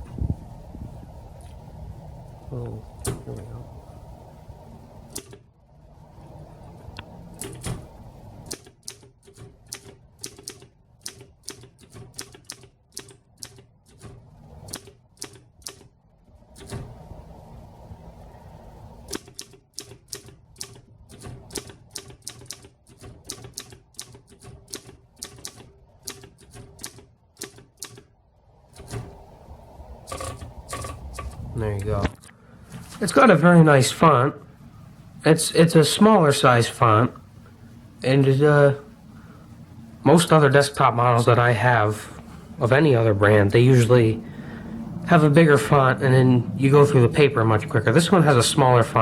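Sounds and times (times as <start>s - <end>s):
manual typewriter clatter: 7.3s - 15.9s, 19.1s - 28.1s, 28.8s - 29.2s, 30.0s - 31.4s.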